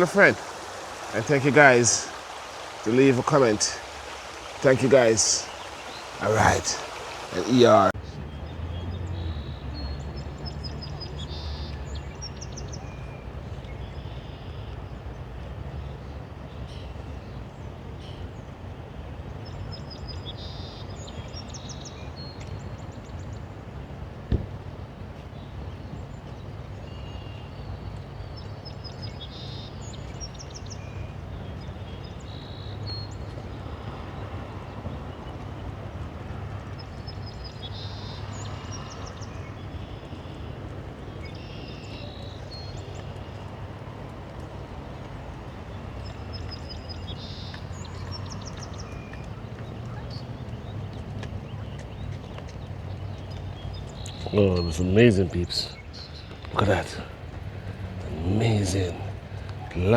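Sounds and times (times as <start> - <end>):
stream water flowing: 0.0 - 8.0, 27.7 - 59.9
songbird chirping: 0.0 - 18.4, 19.0 - 24.4, 25.3 - 59.9.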